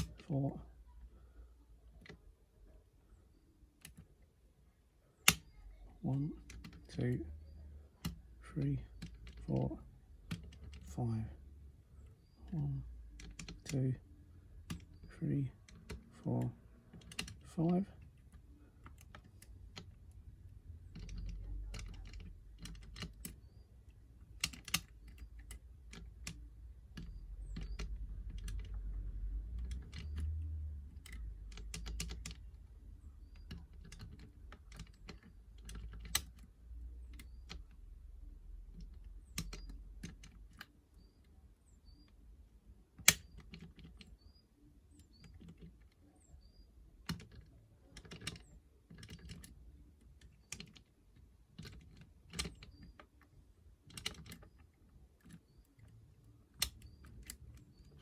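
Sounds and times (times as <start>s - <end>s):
lock pick clicking in lock: 5.2s - 5.6s, 24.3s - 28.8s, 43.0s - 44.0s.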